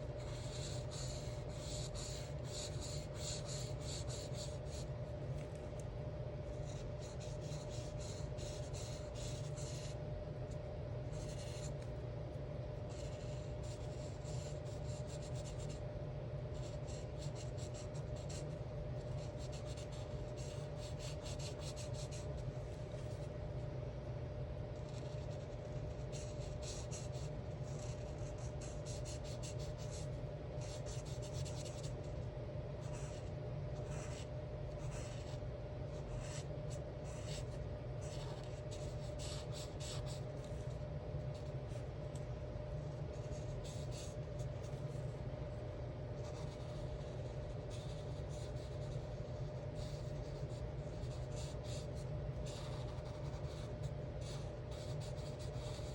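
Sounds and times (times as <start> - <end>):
steady low hum: 0.0 - 55.9
marker scratching on paper: 0.2 - 4.9, 6.5 - 10.0, 11.1 - 11.8, 12.9 - 15.8, 16.6 - 22.4, 24.8 - 32.0, 32.8 - 35.4, 36.0 - 41.8, 43.1 - 45.2, 46.2 - 55.9.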